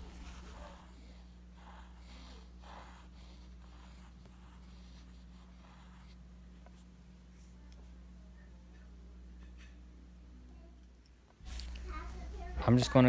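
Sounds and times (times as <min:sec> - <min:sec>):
pencil scratching on paper: 0:00.0 - 0:06.8
steady low hum: 0:00.0 - 0:13.0.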